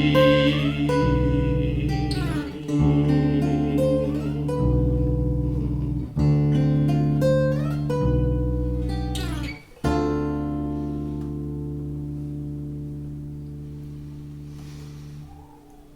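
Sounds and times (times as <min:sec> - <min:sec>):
bass line: 0:00.0 - 0:09.1
guitar chords: 0:00.0 - 0:15.0.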